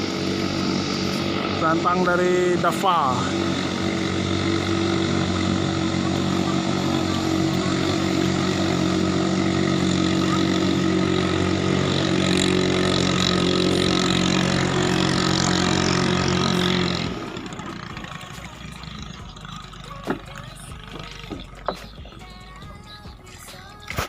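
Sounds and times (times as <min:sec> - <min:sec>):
boat engine running: 0:00.0 - 0:24.0.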